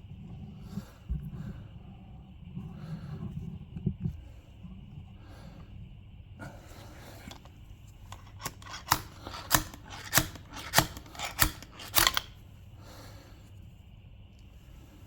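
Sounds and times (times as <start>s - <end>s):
hand tools snipping clicks: 8.1s - 12.4s.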